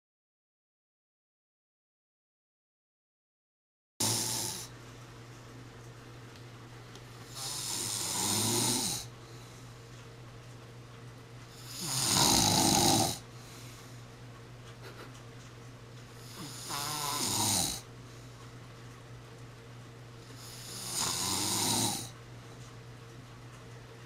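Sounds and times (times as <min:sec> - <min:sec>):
person snoring: 0:04.0 - 0:04.7, 0:07.3 - 0:09.1, 0:11.5 - 0:13.2, 0:16.2 - 0:17.9, 0:20.3 - 0:22.2
quiet breathing: 0:07.2 - 0:09.8, 0:12.7 - 0:14.1.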